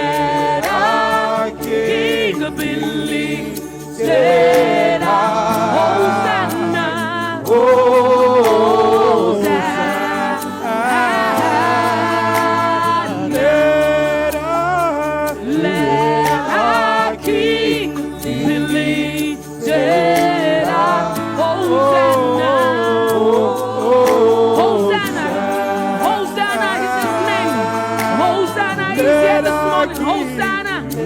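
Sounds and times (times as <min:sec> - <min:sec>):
group singing worship: 0:00.0 - 0:31.0.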